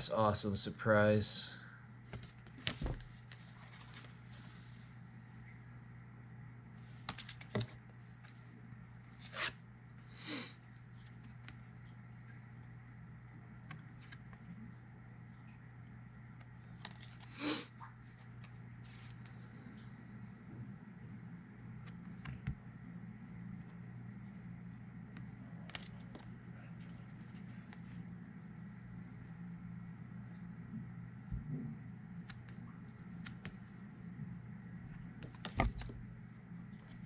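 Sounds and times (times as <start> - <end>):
steady low hum: 0.0 - 37.0
card and paper packaging rustling: 2.1 - 4.4, 7.0 - 9.6, 16.6 - 17.3.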